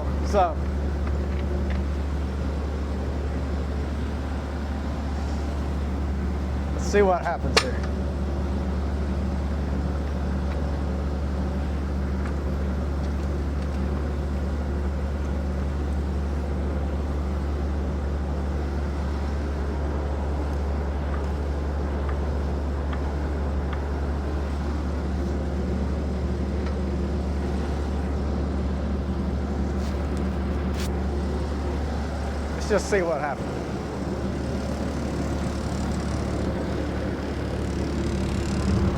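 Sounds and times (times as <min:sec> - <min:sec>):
machine humming: 0:29.7 - 0:38.9.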